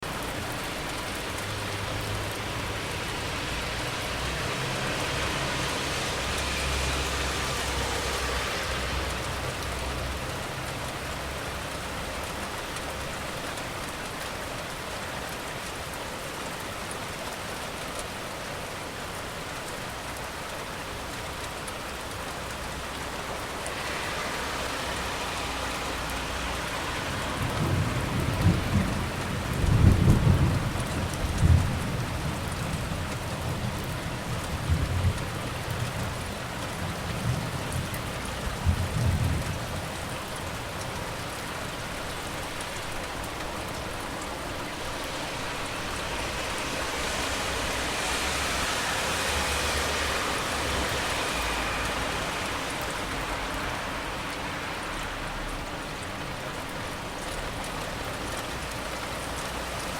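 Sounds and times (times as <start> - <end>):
steady rain falling: 0.0 - 59.9
hiss of car on wet road: 0.3 - 59.9
thunder rolling: 25.7 - 35.9.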